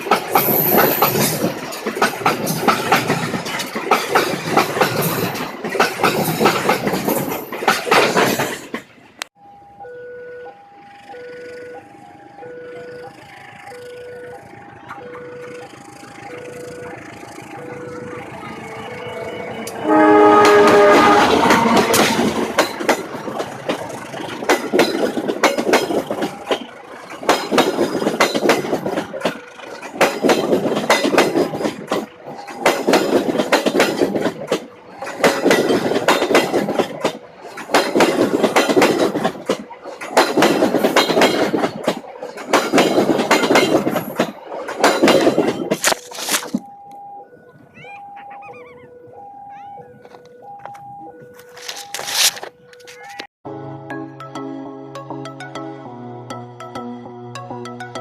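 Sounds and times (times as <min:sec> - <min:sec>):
train wheels clattering over rail joint: 0:00.0 - 0:09.0, 0:20.4 - 0:46.7
short horn tone: 0:18.6 - 0:22.5.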